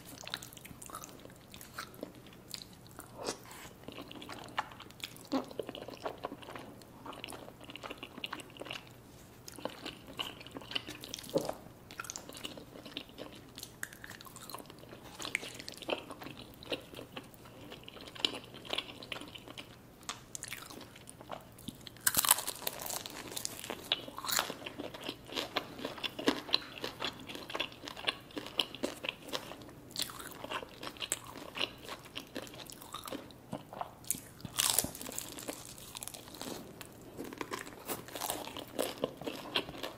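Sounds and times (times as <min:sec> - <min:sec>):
chewing and biting food: 0:00.0 - 0:08.9, 0:09.5 - 0:19.7, 0:20.4 - 0:39.9
food crunching: 0:00.0 - 0:39.9.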